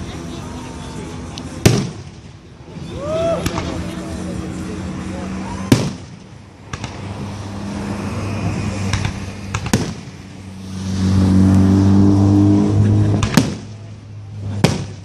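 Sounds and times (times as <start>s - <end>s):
vehicle engine humming: 0.0s - 15.0s
firework bangs and pops: 1.6s - 2.4s, 5.7s - 7.2s, 8.8s - 10.4s, 13.1s - 15.0s.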